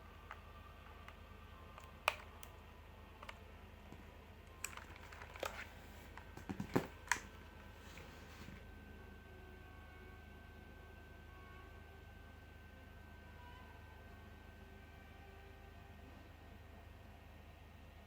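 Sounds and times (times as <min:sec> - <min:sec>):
mechanical keyboard clicks: 0:01.8 - 0:02.5, 0:04.6 - 0:05.6.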